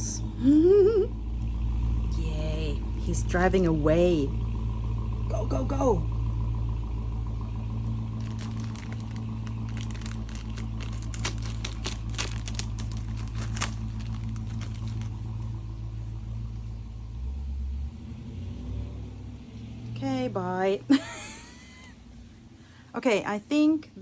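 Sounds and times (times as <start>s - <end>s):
car engine running: 0.0s - 23.7s
crinkling crackling clicks: 8.2s - 15.4s.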